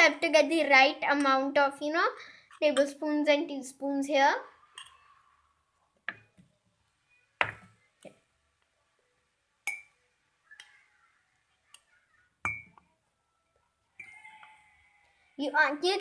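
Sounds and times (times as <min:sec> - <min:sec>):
spoon clinking against dish: 0:09.7 - 0:10.0, 0:12.4 - 0:12.8.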